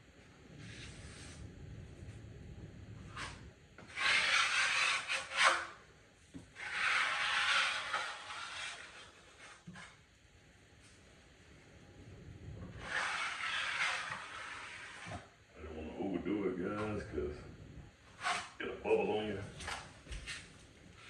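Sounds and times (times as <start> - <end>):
tool scraping drywall: 3.1 - 5.8, 6.5 - 10.0, 12.7 - 15.3, 18.1 - 18.6.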